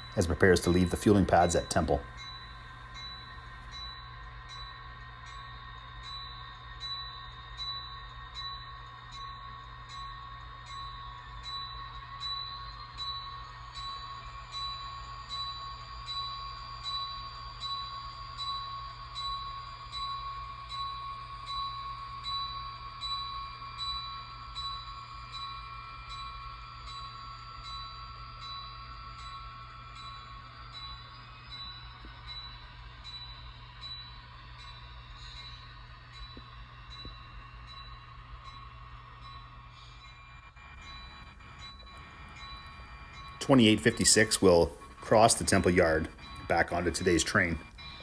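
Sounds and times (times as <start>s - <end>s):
diesel engine running: 0.0s - 2.9s
model locomotive bell ringing: 0.0s - 48.0s.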